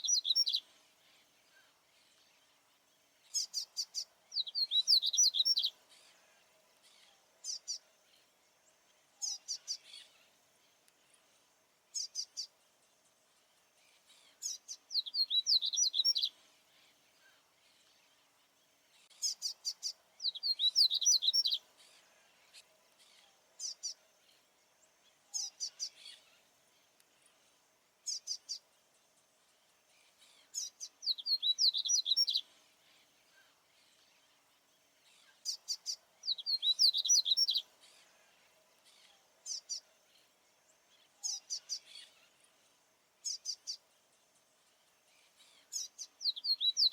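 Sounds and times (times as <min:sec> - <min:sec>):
seedeater bird singing: 0:00.0 - 0:00.7, 0:03.3 - 0:05.8, 0:14.2 - 0:16.4, 0:19.1 - 0:22.0, 0:30.3 - 0:32.5, 0:35.2 - 0:38.1, 0:45.2 - 0:46.9.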